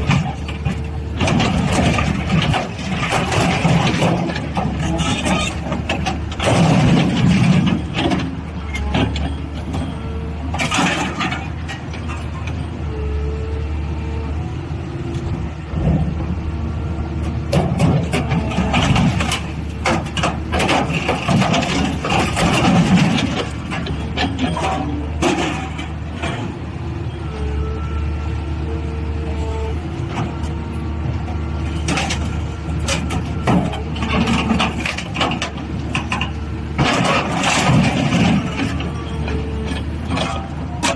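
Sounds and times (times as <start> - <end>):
metal crunching clanks: 0.0 - 12.3, 17.2 - 26.6, 31.7 - 40.9
metal knocks and clanks: 17.5 - 26.6.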